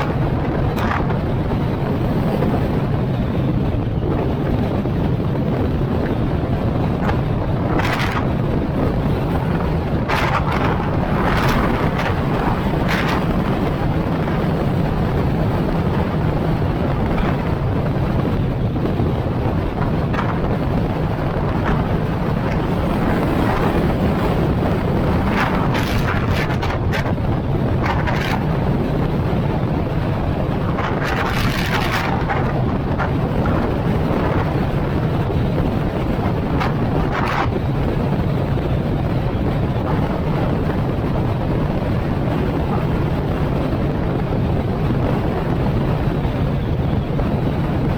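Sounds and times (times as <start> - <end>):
vehicle driving rumble: 0.0 - 47.9
wind buffeting microphone: 0.0 - 47.9.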